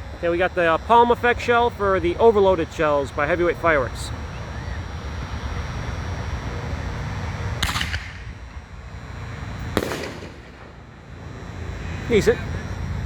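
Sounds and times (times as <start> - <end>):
firework shell launching: 7.6 - 8.4, 9.8 - 11.0
firework shell bursting: 9.8 - 11.0.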